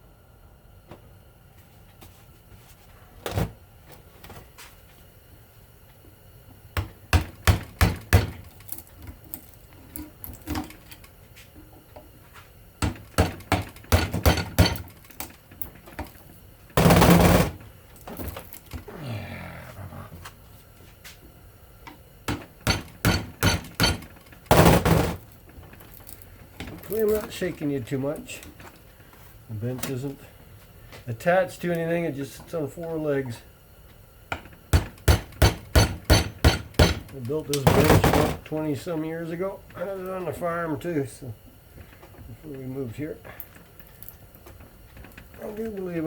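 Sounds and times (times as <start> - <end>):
tools knocking on metal: 12.8 - 14.9, 22.3 - 25.2, 34.4 - 37.1.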